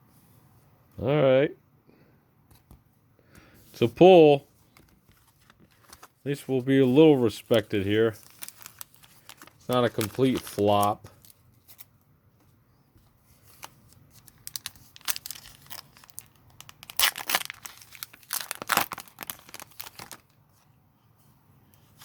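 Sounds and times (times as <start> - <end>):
foil wrapper tearing and crinkling: 4.8 - 11.9, 13.5 - 20.4.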